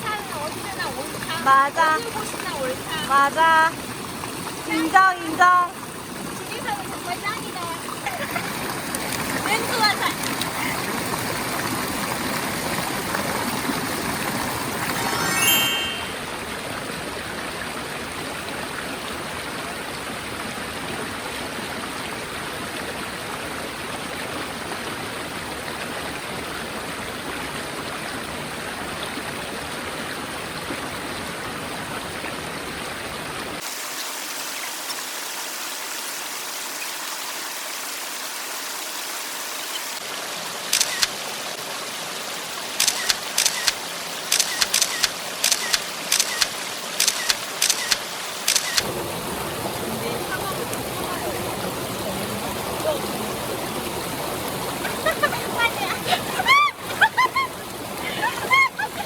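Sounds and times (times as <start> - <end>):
stream rushing over rocks: 0.0 - 59.0
sharp clicks: 42.8 - 48.9.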